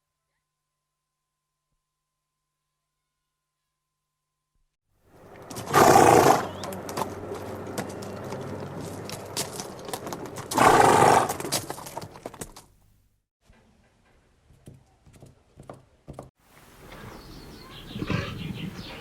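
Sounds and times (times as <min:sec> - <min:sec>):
clicking hoofbeats: 0:05.2 - 0:12.8
horse whinnying: 0:05.5 - 0:06.6, 0:10.5 - 0:11.6.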